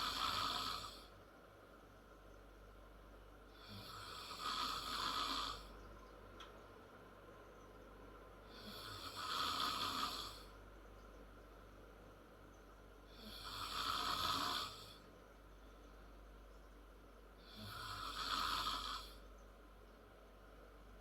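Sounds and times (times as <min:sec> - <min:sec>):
girl snoring: 0:00.0 - 0:01.1, 0:03.5 - 0:05.7, 0:08.5 - 0:10.5, 0:13.1 - 0:15.0, 0:17.4 - 0:19.2
quiet breathing: 0:00.0 - 0:01.2, 0:03.4 - 0:06.0, 0:08.4 - 0:10.7, 0:13.0 - 0:16.3, 0:17.3 - 0:19.5.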